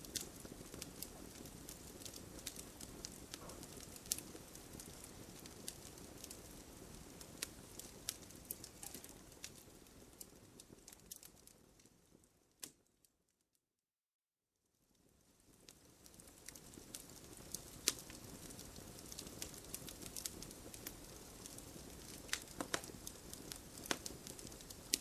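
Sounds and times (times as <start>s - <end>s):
wood fire crackling: 0.0s - 13.1s, 14.8s - 25.0s.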